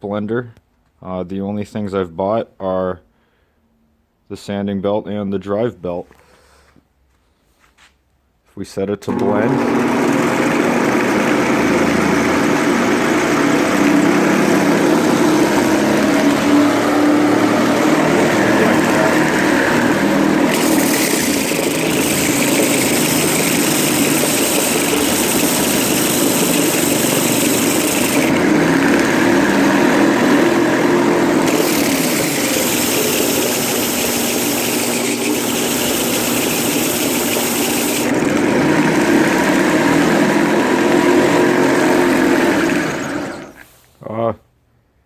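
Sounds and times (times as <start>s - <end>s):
belt sander motor whine: 9.1s - 43.6s.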